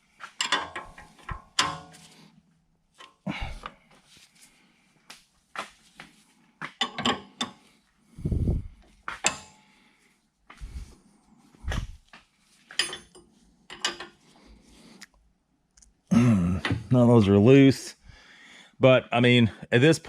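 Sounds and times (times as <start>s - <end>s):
wrench clinking on metal bolts: 0.4s - 2.0s, 12.7s - 14.2s
dull low thumps: 8.2s - 8.8s.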